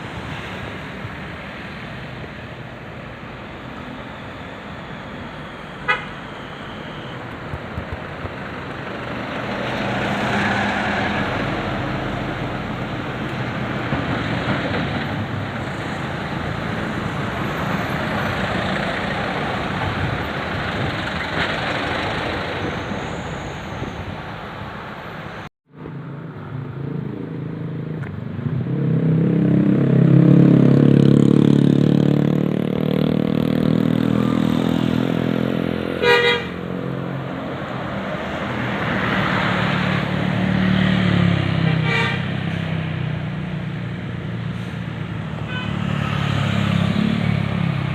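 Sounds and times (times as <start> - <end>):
bus engine passing: 0.0 - 47.9
roadside traffic: 0.0 - 47.9
musical multi-tone air horn: 5.8 - 6.3, 36.0 - 36.6, 41.7 - 42.3, 45.5 - 46.2.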